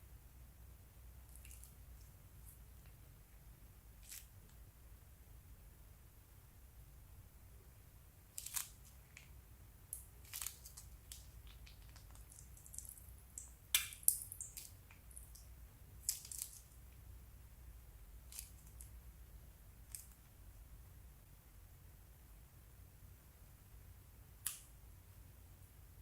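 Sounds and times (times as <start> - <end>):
plastic bags and slime crackling: 8.3 - 16.8.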